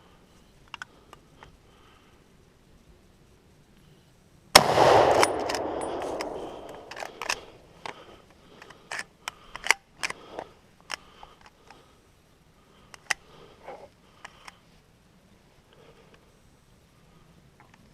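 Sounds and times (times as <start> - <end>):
rifle shot: 4.6 - 7.6.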